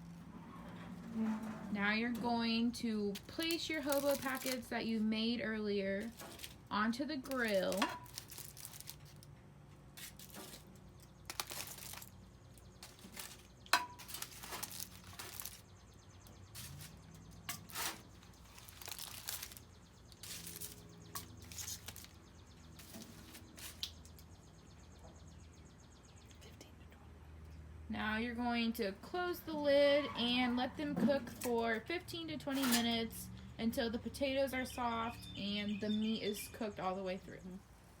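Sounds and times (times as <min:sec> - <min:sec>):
packets tapping on grill grate: 0:02.1 - 0:04.9, 0:06.0 - 0:15.7, 0:16.5 - 0:24.3
aluminium foil crinkling: 0:03.0 - 0:05.1, 0:06.0 - 0:09.3, 0:09.9 - 0:15.8, 0:16.6 - 0:24.2, 0:32.5 - 0:32.9.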